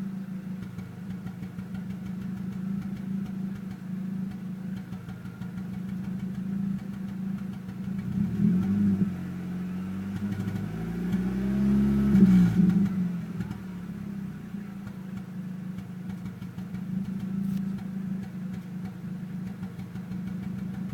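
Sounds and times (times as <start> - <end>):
car engine idling with misfire: 0.0 - 20.9
engine revving: 7.8 - 14.0.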